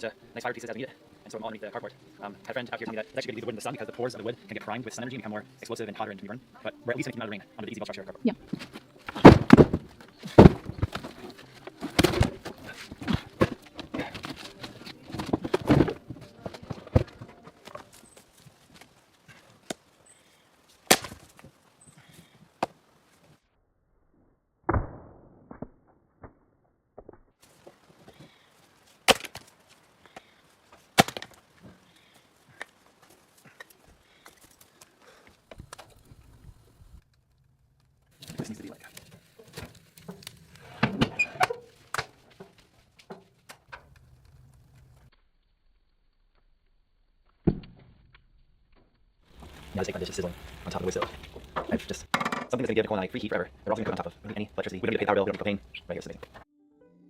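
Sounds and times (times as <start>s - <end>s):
axe chopping firewood: 8.6s - 17.9s, 20.9s - 21.5s, 29.0s - 29.5s, 30.9s - 31.5s.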